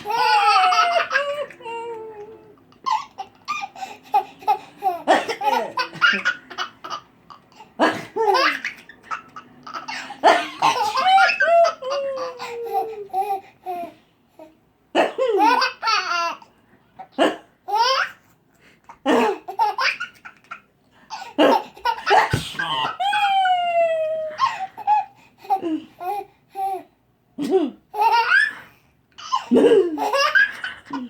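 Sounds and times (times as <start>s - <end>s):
baby belly-laughing: 0.0s - 2.0s
adult fake sneeze: 22.1s - 23.0s.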